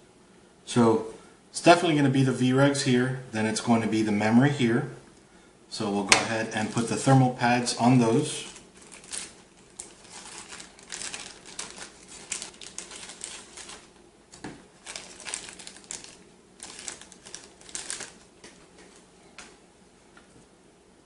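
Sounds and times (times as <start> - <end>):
plastic film crinkling: 7.9 - 19.5.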